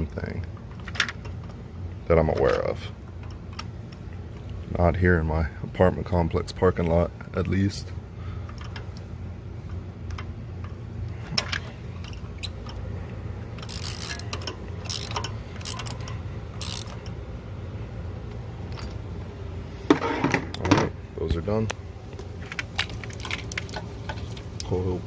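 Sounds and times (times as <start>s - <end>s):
steady low hum: 0.0s - 25.0s
socket ratchet clicking: 13.5s - 17.2s.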